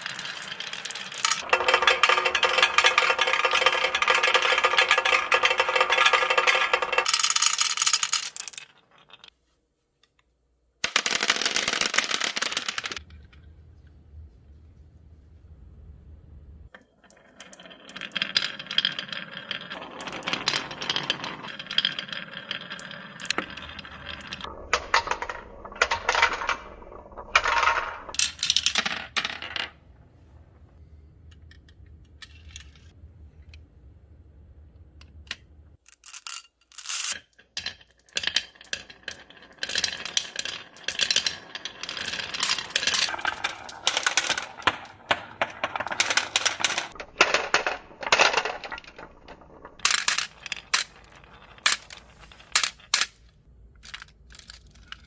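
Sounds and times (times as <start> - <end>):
marbles clattering down a track: 0.0 - 9.3, 10.8 - 13.1, 16.8 - 29.8, 36.0 - 55.0.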